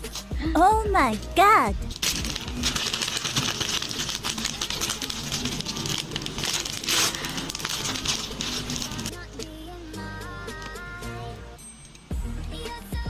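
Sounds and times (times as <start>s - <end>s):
background music: 0.0s - 13.0s
packaging rustling and crinkling: 1.9s - 9.1s.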